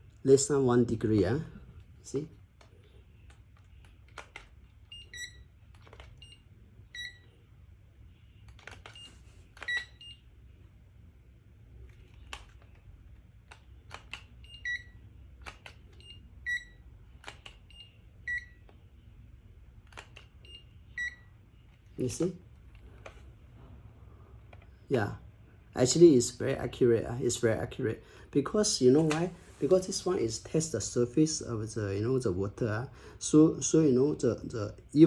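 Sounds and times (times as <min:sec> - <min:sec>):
thermometer beeps: 0:04.9 - 0:05.5, 0:06.2 - 0:07.3, 0:08.9 - 0:10.2, 0:14.4 - 0:15.0, 0:16.0 - 0:16.8, 0:17.7 - 0:18.6, 0:20.4 - 0:21.3.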